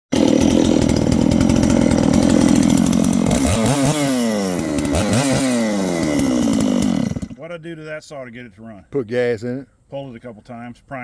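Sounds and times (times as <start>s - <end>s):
chainsaw revving: 0.1s - 7.4s.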